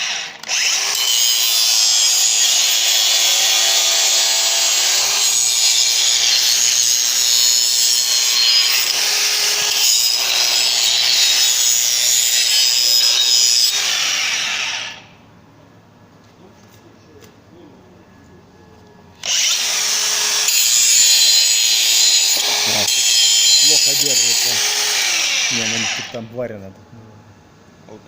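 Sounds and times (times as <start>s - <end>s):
angle grinder grinding steel: 0.0s - 15.0s, 19.2s - 26.2s.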